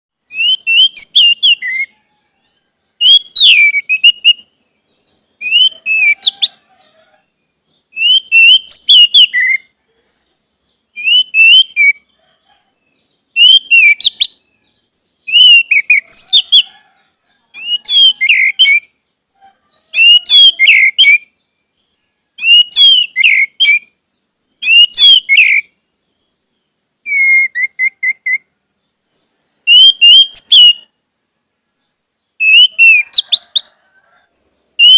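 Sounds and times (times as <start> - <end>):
thrush singing whistled phrases: 0.2 - 2.0, 3.0 - 4.6, 5.4 - 6.6, 7.9 - 9.7, 10.9 - 12.1, 13.3 - 14.4, 15.2 - 16.7, 17.6 - 19.0, 19.9 - 21.3, 22.4 - 24.0, 24.6 - 25.8, 27.0 - 28.5, 29.6 - 30.9, 32.4 - 33.7.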